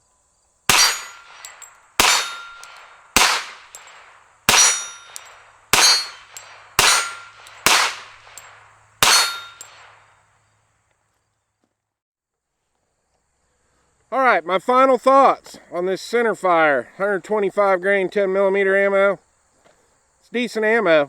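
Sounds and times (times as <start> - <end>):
bullet clanging on steel target: 0.7 - 10.0
gunshots: 0.7 - 10.0.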